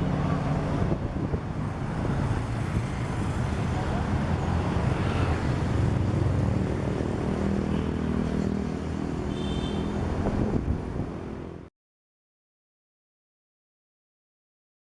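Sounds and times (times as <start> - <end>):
road traffic rumble: 0.0 - 11.7.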